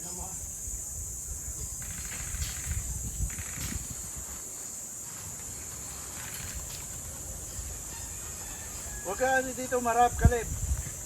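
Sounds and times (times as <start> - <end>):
high-pitched insect buzzing: 0.0 - 4.4
wind rumble on microphone: 0.5 - 4.4, 10.0 - 11.0.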